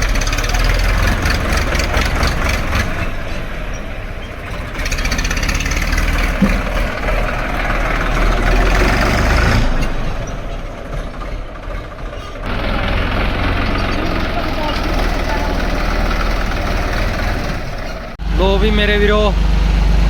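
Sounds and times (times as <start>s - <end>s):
diesel tractor engine running: 0.0s - 20.0s.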